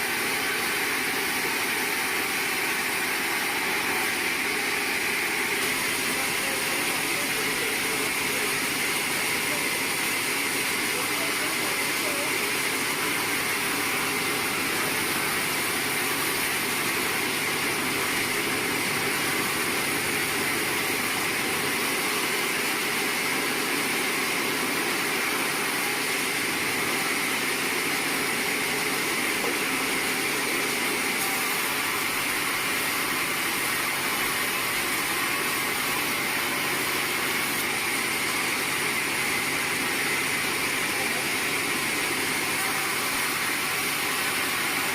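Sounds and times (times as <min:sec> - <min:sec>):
sawmill machinery running: 0:00.0 - 0:44.9.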